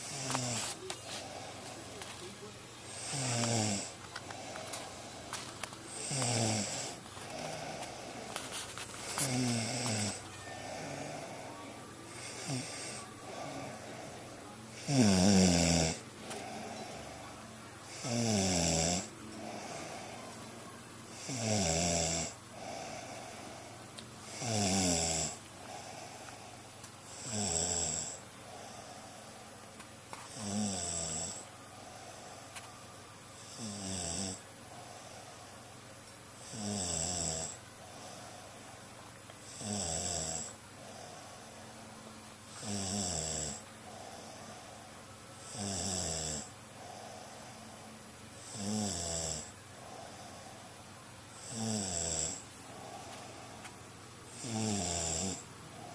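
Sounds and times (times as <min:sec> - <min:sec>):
soft breathing: 0:00.0 - 0:14.6, 0:16.2 - 0:17.6, 0:19.3 - 0:20.8, 0:22.4 - 0:23.9, 0:25.3 - 0:26.9, 0:28.1 - 0:30.4, 0:31.3 - 0:33.0, 0:34.6 - 0:35.8, 0:37.8 - 0:39.0, 0:40.5 - 0:42.2, 0:43.6 - 0:45.2, 0:46.4 - 0:48.1, 0:49.5 - 0:51.0, 0:52.4 - 0:53.9
person snoring loudly: 0:02.9 - 0:04.7, 0:05.9 - 0:08.3, 0:12.1 - 0:14.2, 0:14.8 - 0:17.0, 0:17.9 - 0:20.2, 0:21.1 - 0:23.4, 0:24.2 - 0:26.0, 0:27.1 - 0:28.2, 0:30.3 - 0:31.4, 0:33.4 - 0:34.4, 0:36.4 - 0:37.6, 0:39.5 - 0:41.0, 0:42.6 - 0:44.3, 0:45.5 - 0:47.2, 0:48.4 - 0:50.1, 0:51.4 - 0:53.0, 0:54.3 - 0:55.4.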